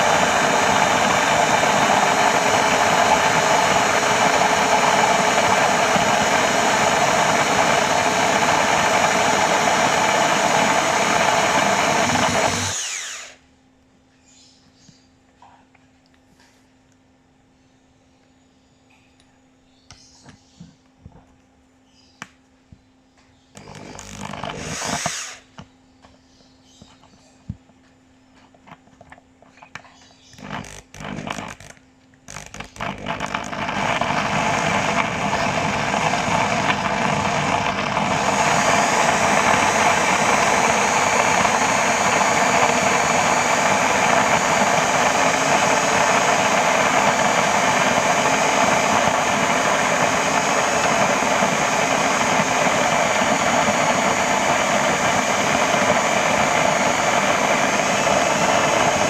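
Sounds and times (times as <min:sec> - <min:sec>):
coffee grinder grinding beans: 0:00.0 - 0:13.4, 0:23.6 - 0:25.4, 0:30.2 - 0:59.0.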